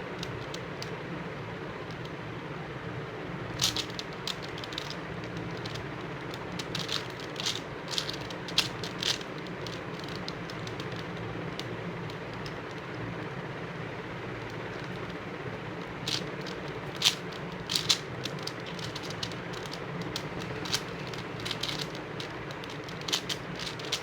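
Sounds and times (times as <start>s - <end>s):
puzzle cube clicking: 3.6s - 11.7s, 15.8s - 24.0s.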